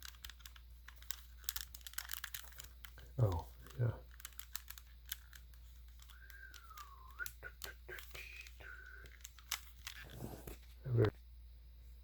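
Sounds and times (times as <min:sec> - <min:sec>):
plastic cube clicks and clacks: 0:00.0 - 0:10.2
faint gliding whistle: 0:06.1 - 0:07.5.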